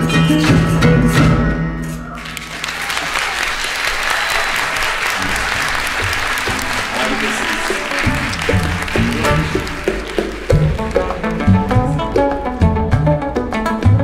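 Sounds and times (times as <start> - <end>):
audience applauding: 2.2 - 12.5
band playing junk instruments: 5.0 - 14.0.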